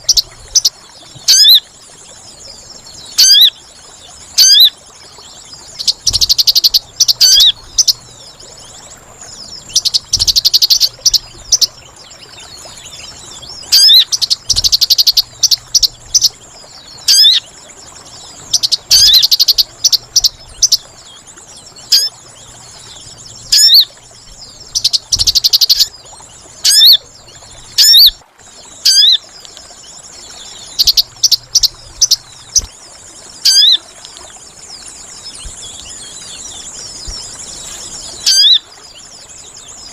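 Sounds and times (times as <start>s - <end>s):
bird-lure whistled notes and trills: 1.3s - 1.6s, 4.4s - 4.7s, 23.4s - 23.9s, 26.6s - 27.0s, 27.8s - 28.2s, 30.8s - 32.7s.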